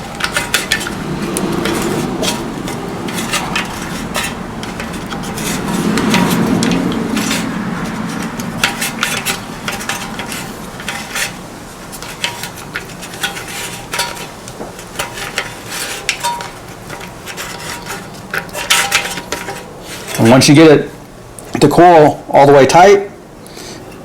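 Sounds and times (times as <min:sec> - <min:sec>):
starter parts clicking and knocking: 0:00.0 - 0:17.3
recoil starter rubbing: 0:00.0 - 0:21.1.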